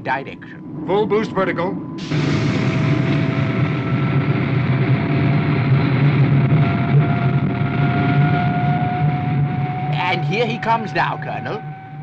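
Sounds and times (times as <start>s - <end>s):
jet engine rushing roar: 0.0s - 12.0s
thin whine: 0.0s - 12.0s.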